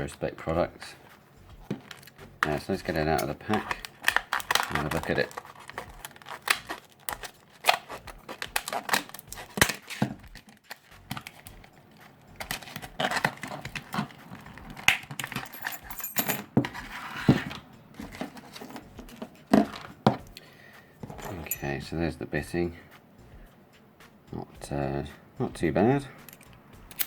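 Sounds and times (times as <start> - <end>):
plastic packaging crinkling and tearing: 1.8 - 15.2
metallic clicks of padlock and keys: 6.6 - 16.6, 21.0 - 21.8, 26.2 - 27.0.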